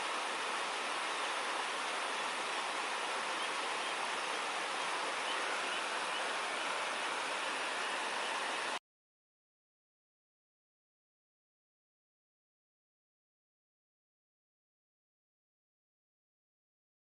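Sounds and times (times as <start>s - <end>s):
steady rushing noise: 0.0s - 8.8s.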